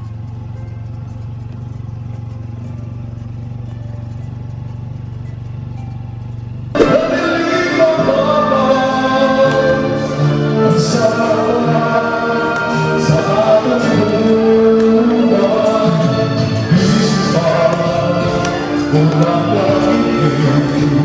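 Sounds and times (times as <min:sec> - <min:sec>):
song with sung vocals: 0:06.8 - 0:21.0.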